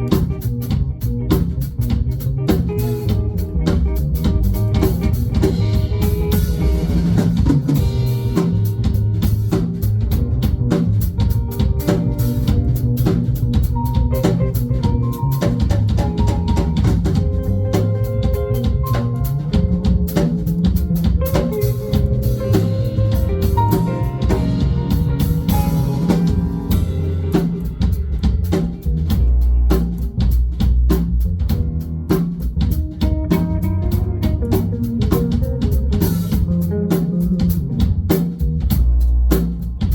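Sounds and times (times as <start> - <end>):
electric guitar: 0.0 - 30.3, 32.3 - 38.5
bass guitar: 0.0 - 39.9
drum kit beat: 0.0 - 39.9.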